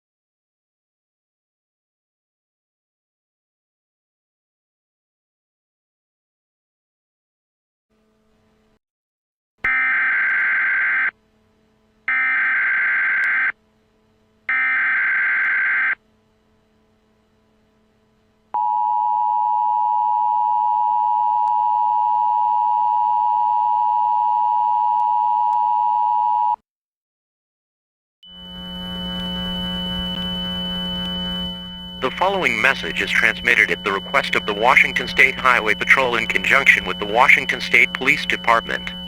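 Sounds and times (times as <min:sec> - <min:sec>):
data bursts: 0:32.0 - 0:39.0.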